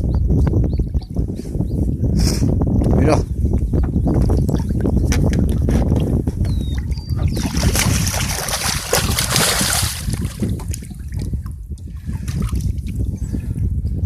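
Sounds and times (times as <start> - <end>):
wind on microphone: 0.0 - 14.0
water splashing against boat: 4.2 - 11.5.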